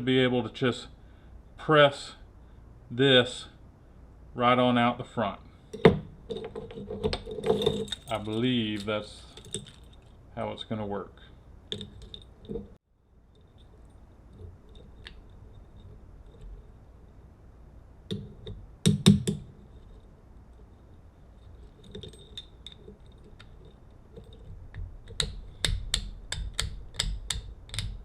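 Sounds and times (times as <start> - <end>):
hand tool metal clicks: 25.0 - 28.0.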